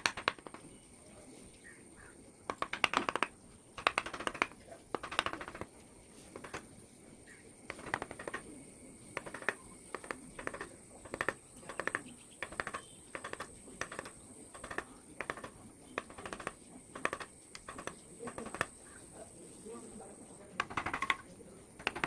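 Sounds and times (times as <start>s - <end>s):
chisel tapping and cutting wood: 0.0s - 0.7s, 2.5s - 5.7s, 6.4s - 6.6s, 7.7s - 8.5s, 9.2s - 18.7s, 20.6s - 21.2s, 21.8s - 22.0s.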